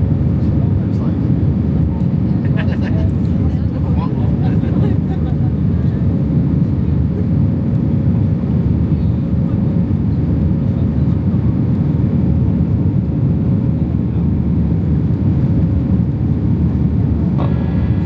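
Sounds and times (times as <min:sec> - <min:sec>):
airplane engines roaring in cabin: 0:00.0 - 0:18.0.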